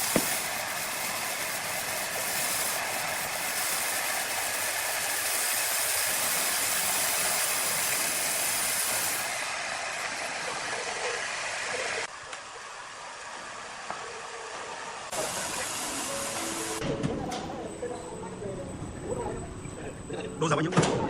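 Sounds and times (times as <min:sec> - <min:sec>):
sawmill machinery hissing: 0:00.0 - 0:16.9.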